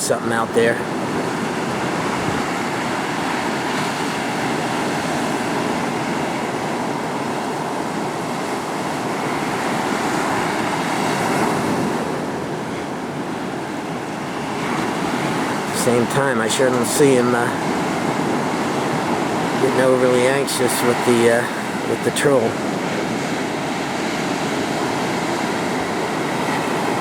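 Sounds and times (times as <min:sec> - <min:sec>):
wind on microphone: 0:00.0 - 0:15.8
small surf waves washing: 0:00.0 - 0:27.0.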